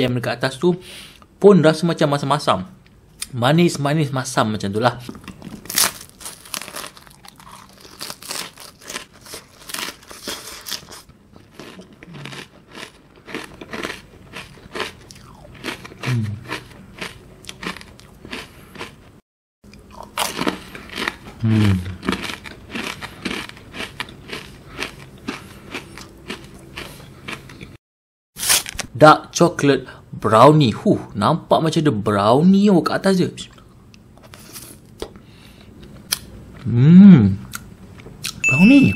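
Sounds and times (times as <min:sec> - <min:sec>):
ice cream being chewed: 0:05.1 - 0:19.1, 0:19.7 - 0:27.8.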